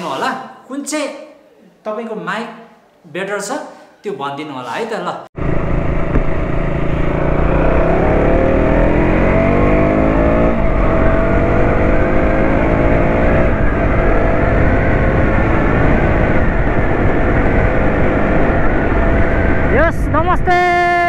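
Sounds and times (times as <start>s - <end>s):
motorcycle engine accelerating: 5.4s - 20.3s
wind buffeting microphone: 10.5s - 21.0s.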